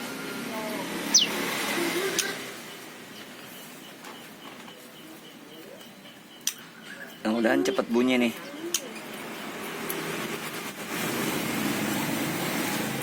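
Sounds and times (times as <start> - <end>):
faint bird chirps: 1.1 - 9.5.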